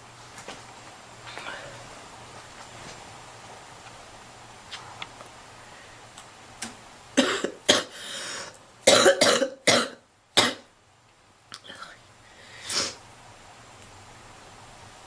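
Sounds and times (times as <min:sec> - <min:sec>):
girl coughing: 0:07.2 - 0:08.0, 0:08.9 - 0:10.7.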